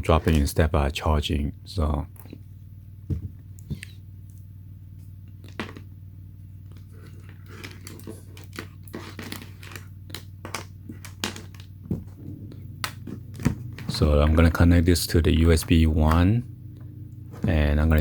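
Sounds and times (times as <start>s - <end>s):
low electrical hum: 0.0s - 18.0s
plastic clicks and rustles: 6.6s - 12.2s.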